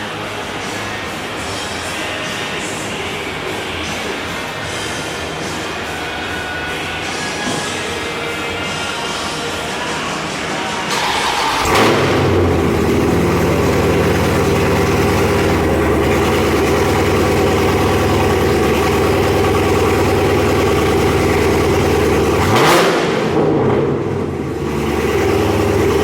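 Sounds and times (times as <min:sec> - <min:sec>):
car engine idling: 0:10.9 - 0:26.0
car engine starting: 0:10.9 - 0:26.0
engine revving: 0:10.9 - 0:26.0.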